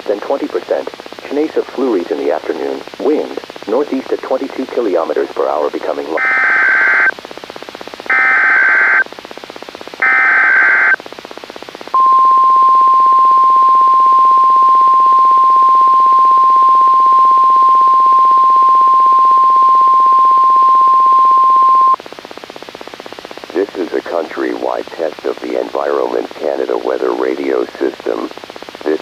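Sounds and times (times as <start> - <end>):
light radio hiss: 0.0 - 7.1, 8.1 - 9.0, 10.0 - 11.0, 23.5 - 29.0
harsh warbling data screech: 6.2 - 7.1, 8.1 - 9.0, 10.0 - 11.0.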